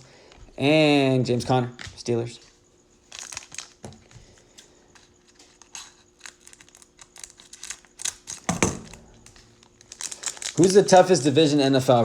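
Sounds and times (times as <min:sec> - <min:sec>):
plastic wrappers crinkling: 0:02.5 - 0:12.0.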